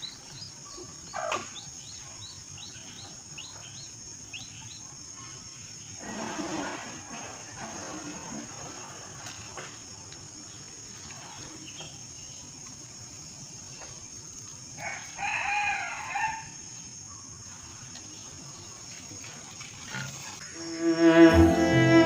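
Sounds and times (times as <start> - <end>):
rooster crowing: 14.8 - 16.5.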